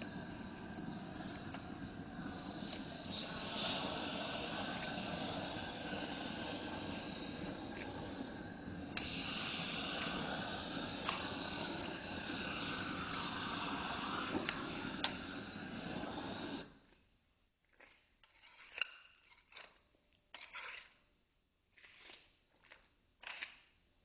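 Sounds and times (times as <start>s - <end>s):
torch hissing: 0.0s - 16.8s.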